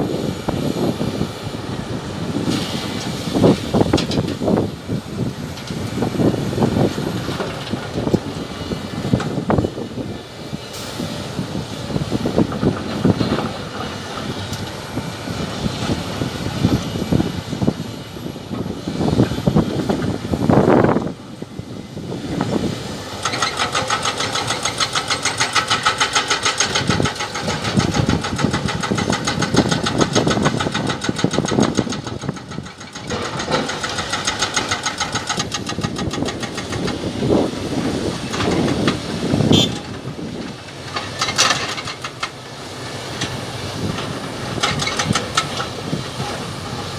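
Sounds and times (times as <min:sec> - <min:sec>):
hydraulic rock breaker hammering: 0:23.2 - 0:42.5.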